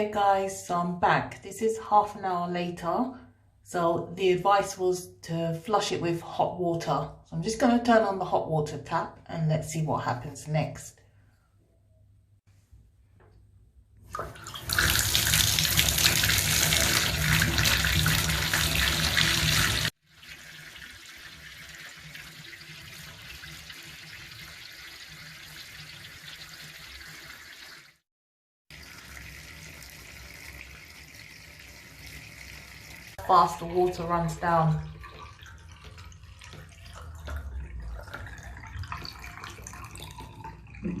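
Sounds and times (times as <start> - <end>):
tap water running into drain: 14.2 - 28.0, 28.7 - 41.0.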